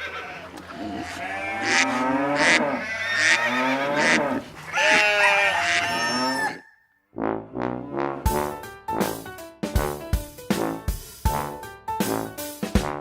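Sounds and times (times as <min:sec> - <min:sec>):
cattle mooing: 0:00.0 - 0:06.7
fowl calls: 0:00.0 - 0:06.9
music: 0:07.2 - 0:13.0.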